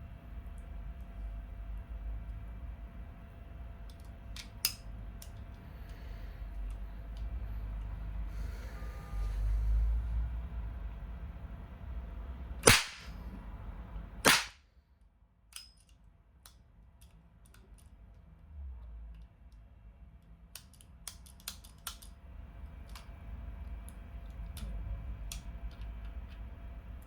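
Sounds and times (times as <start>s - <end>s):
toy revolver shots: 12.6s - 13.2s, 14.2s - 14.6s.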